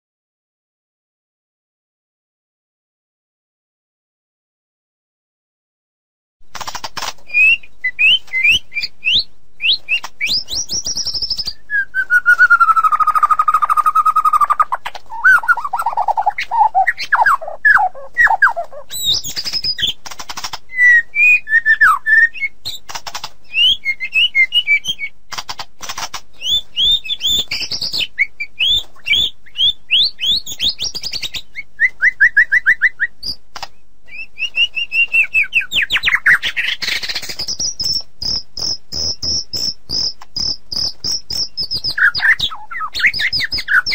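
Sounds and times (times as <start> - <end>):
bird singing whistled song: 7.3 - 20.0, 20.7 - 22.9, 23.5 - 25.2, 26.4 - 33.4, 34.1 - 43.9.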